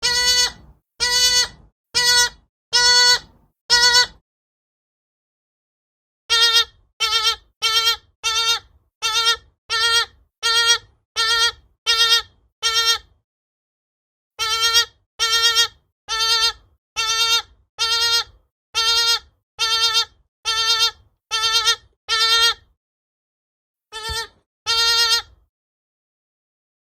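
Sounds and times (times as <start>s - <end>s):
bushbaby wavering cries: 0.0s - 4.2s, 6.3s - 13.0s, 14.4s - 22.6s, 23.9s - 25.3s.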